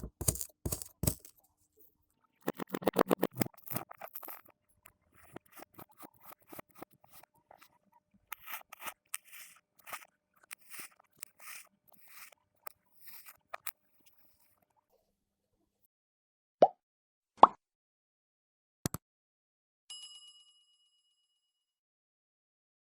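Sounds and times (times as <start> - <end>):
kinetic sand crunching: 0.0 - 1.3.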